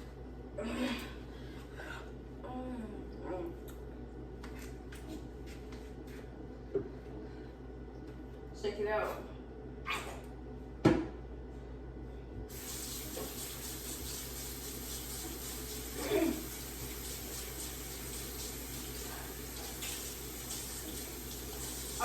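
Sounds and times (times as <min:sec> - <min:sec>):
kitchen tap running: 0:12.5 - 0:22.0.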